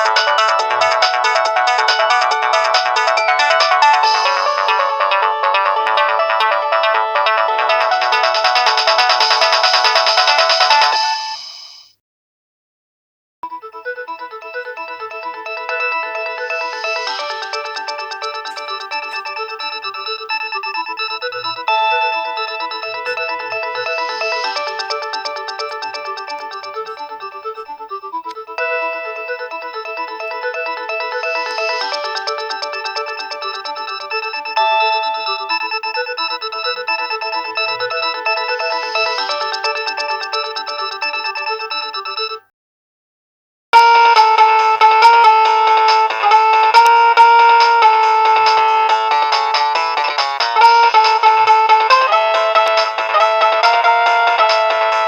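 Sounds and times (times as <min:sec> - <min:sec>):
electronic phone ringtone: 0:00.0 - 0:11.9, 0:13.4 - 0:42.5, 0:43.8 - 0:55.0.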